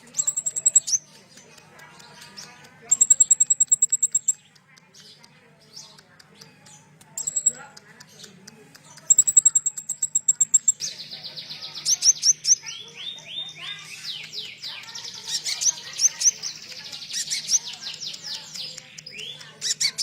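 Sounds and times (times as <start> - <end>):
rapid high bird trill: 0.0 - 1.1, 2.4 - 4.4, 7.2 - 7.7, 9.1 - 20.0
songbird singing: 0.0 - 20.0.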